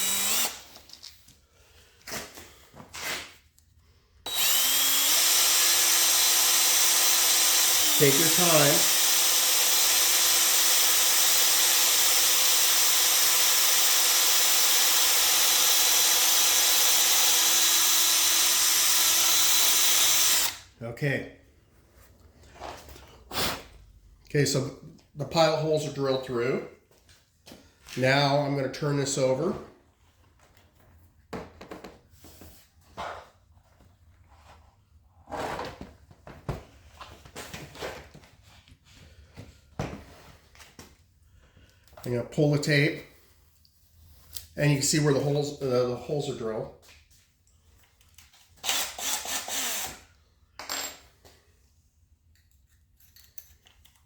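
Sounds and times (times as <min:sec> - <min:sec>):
electric drill boring through metal: 0:00.0 - 0:00.7, 0:04.3 - 0:20.7, 0:48.6 - 0:50.1.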